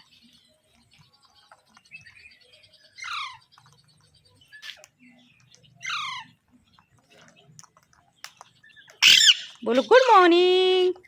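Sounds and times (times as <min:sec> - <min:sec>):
parrot squawk: 0:03.0 - 0:03.4, 0:05.8 - 0:06.4, 0:09.0 - 0:09.6
faint clicks: 0:03.5 - 0:10.0.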